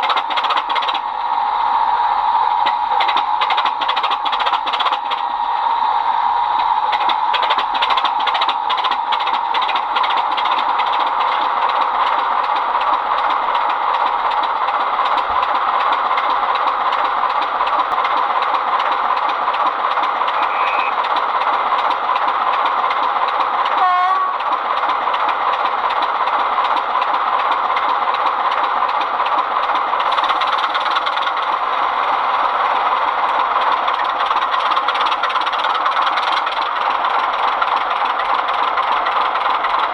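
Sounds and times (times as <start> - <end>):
diesel engine sound from small speaker: 0.0 - 25.0.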